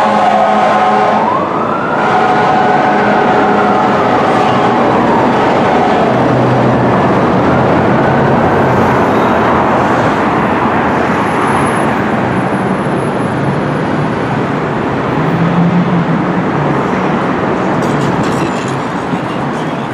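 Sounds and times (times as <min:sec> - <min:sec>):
siren wail: 0:00.0 - 0:09.4
fire engine and road noise: 0:00.0 - 0:19.9.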